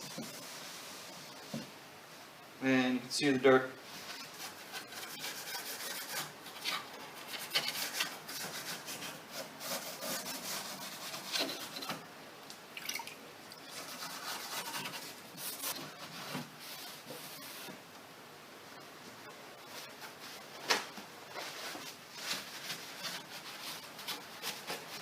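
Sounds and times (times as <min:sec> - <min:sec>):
wiping strokes on wood: 0:00.0 - 0:01.6, 0:13.7 - 0:17.7.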